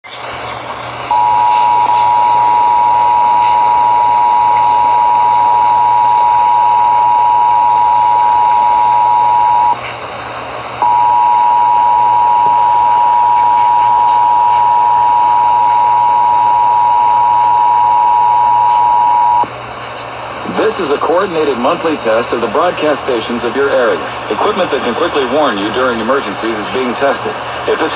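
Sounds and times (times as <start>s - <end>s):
radio background hiss: 0.0s - 27.9s.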